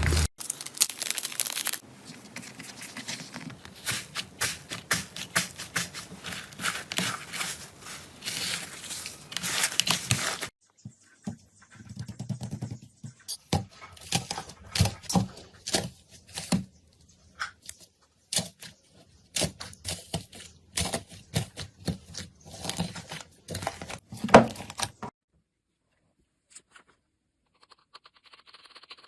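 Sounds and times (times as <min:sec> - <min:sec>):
slime popping and crackling: 0:00.0 - 0:01.8.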